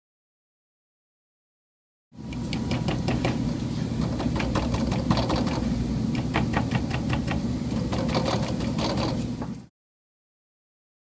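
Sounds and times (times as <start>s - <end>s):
pump humming: 2.2s - 9.7s.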